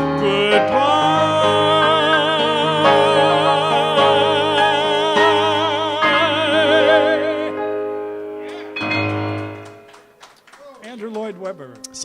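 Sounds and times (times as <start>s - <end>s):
man singing with vibrato: 0.0s - 7.9s
sustained accompaniment chords: 0.0s - 10.1s.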